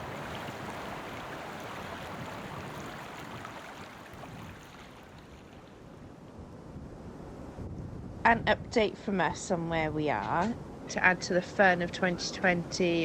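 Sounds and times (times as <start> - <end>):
river rushing: 0.0 - 5.9.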